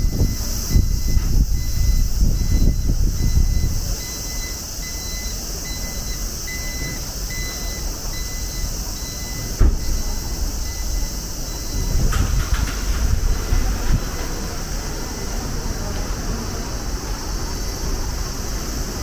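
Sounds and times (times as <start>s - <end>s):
wind noise on microphone: 0.0s - 4.4s, 9.4s - 19.0s
high electronic beeps: 0.0s - 12.7s.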